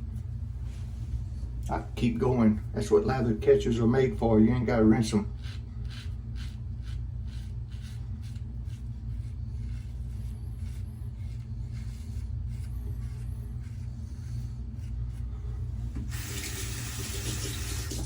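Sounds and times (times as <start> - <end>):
steady low hum: 0.0 - 18.0
razor scraping stubble: 4.2 - 16.8.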